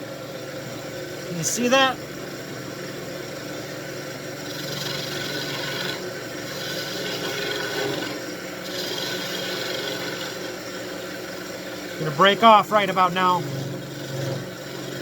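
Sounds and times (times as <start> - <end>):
wood lathe running: 2.1 - 15.0
cutting tool scraping wood: 13.5 - 15.0.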